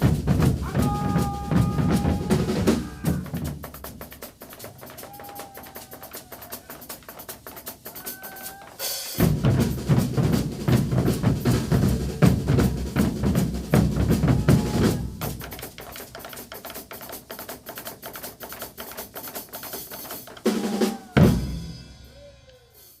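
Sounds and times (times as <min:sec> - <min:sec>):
bass drums: 0:00.0 - 0:04.2, 0:09.2 - 0:15.7, 0:20.5 - 0:22.3
snare drum strokes: 0:00.0 - 0:23.0.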